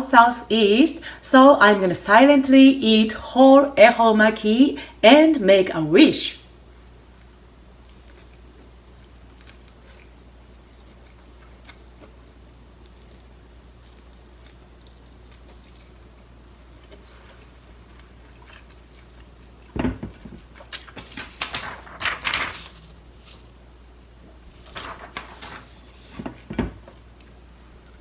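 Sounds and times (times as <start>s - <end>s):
person chewing: 7.1s - 19.7s.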